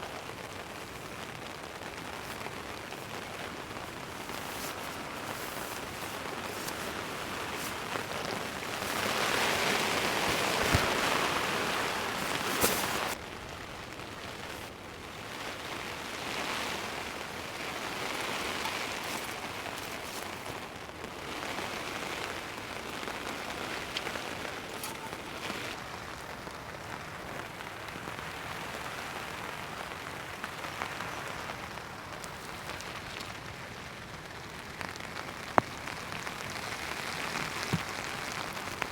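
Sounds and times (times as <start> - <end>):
heavy rain pouring: 0.0 - 38.9.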